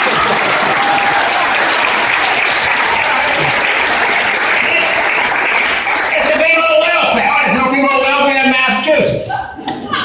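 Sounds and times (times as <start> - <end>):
audience applauding and cheering: 0.0 - 7.4.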